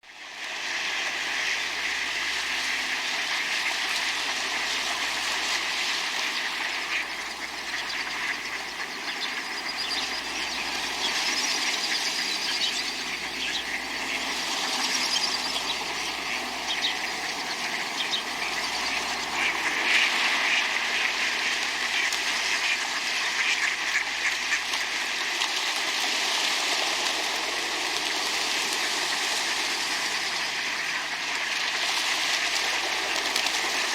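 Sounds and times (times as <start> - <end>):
ducks quacking: 1.4 - 25.3.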